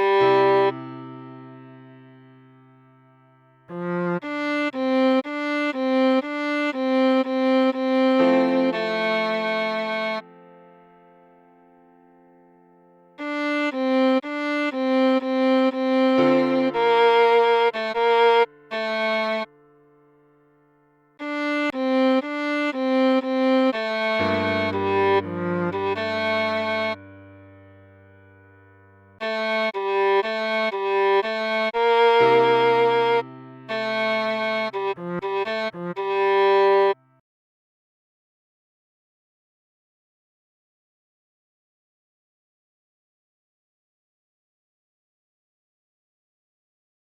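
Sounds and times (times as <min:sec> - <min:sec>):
viola melody in short bowed notes: 0:00.0 - 0:02.1, 0:03.7 - 0:10.8, 0:13.2 - 0:19.6, 0:21.2 - 0:28.2, 0:29.2 - 0:37.2.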